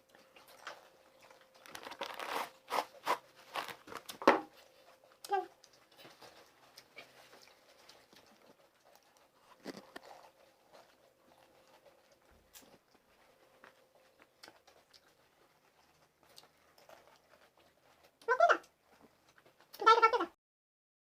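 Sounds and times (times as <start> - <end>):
people chewing crunchy food: 0.0 - 20.1.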